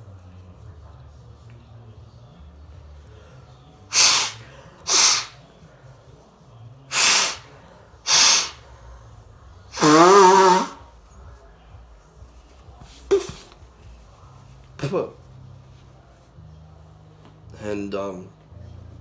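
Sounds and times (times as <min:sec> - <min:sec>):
person blowing nose into tissues: 0:03.9 - 0:05.4, 0:06.9 - 0:08.7, 0:09.7 - 0:10.8, 0:12.8 - 0:13.6
voiced hum: 0:09.7 - 0:10.8.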